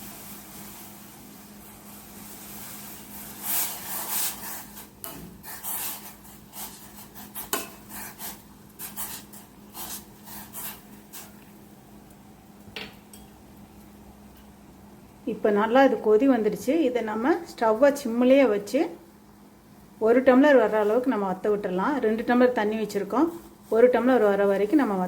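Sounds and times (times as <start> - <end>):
spoon scraping cooking pot: 3.5 - 11.4.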